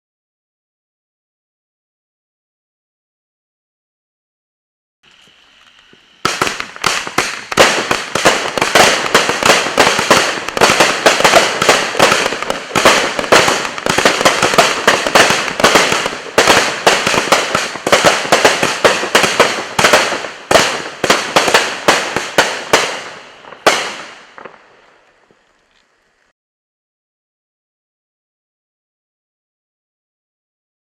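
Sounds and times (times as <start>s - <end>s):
faint fuse hiss: 5.0s - 8.1s, 23.0s - 26.3s
fireworks barrage: 5.0s - 26.1s.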